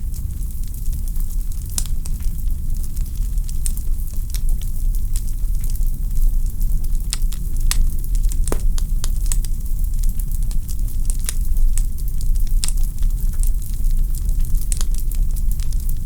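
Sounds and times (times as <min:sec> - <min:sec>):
log fire crackling: 0:08.5 - 0:09.5.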